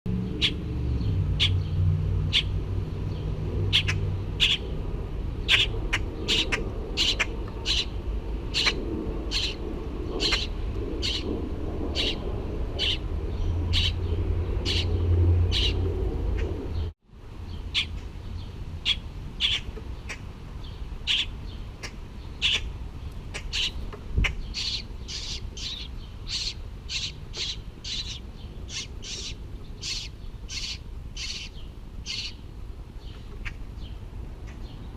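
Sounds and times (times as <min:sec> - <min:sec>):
low rumble: 0:00.1 - 0:17.0
baby bird chirping: 0:03.7 - 0:04.6, 0:05.5 - 0:07.9, 0:08.6 - 0:09.6, 0:10.2 - 0:11.2, 0:12.0 - 0:12.2, 0:12.8 - 0:13.0, 0:13.6 - 0:14.0, 0:14.6 - 0:15.8, 0:17.7 - 0:17.9, 0:18.9 - 0:20.2, 0:21.1 - 0:21.3, 0:22.4 - 0:22.7, 0:23.3 - 0:32.4.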